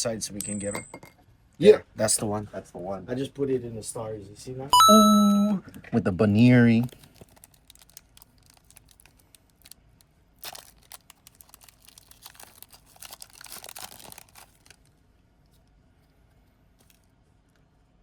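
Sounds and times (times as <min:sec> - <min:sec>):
foil wrapper tearing and crinkling: 0:07.0 - 0:09.8, 0:10.4 - 0:14.9.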